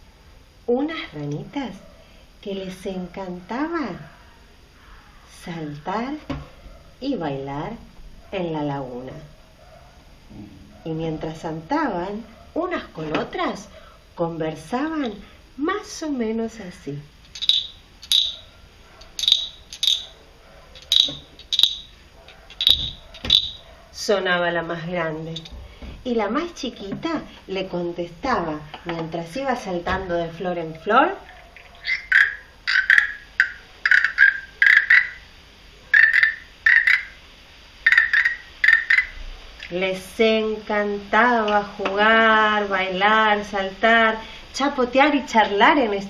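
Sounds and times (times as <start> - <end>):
imitated frog croaks: 17.3 - 18.5, 19.1 - 20.2, 20.8 - 23.7, 31.2 - 35.3, 35.9 - 39.7.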